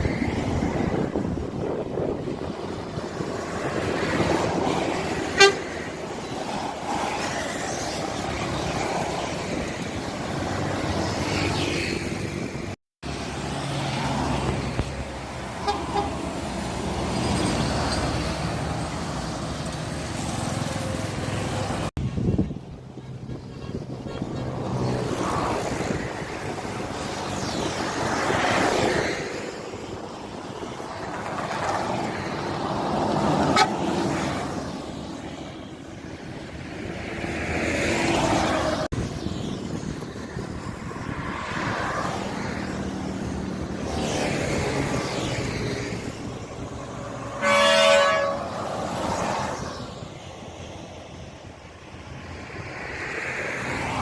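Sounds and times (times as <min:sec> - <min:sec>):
road traffic: 0:00.0 - 0:54.0
bus horns: 0:05.2 - 0:06.0, 0:15.5 - 0:16.4, 0:33.4 - 0:34.1, 0:47.1 - 0:48.9.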